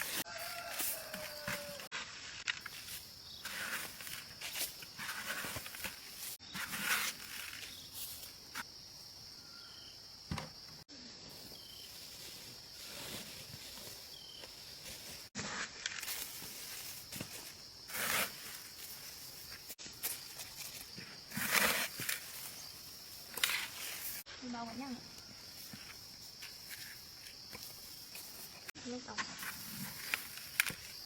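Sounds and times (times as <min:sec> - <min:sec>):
rustling and scraping in soil: 0:00.0 - 0:08.7, 0:11.3 - 0:31.0
high insect drone: 0:16.1 - 0:31.0.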